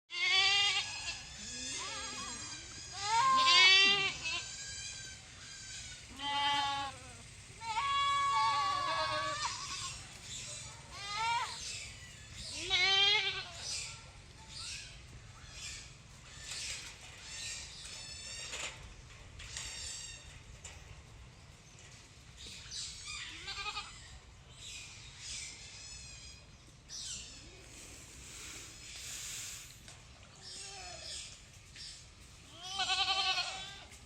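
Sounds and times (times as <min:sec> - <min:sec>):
animal bleating: 0:00.1 - 0:10.2, 0:12.4 - 0:13.9, 0:23.2 - 0:24.1, 0:32.5 - 0:34.0
short high hissy sounds: 0:27.6 - 0:30.6.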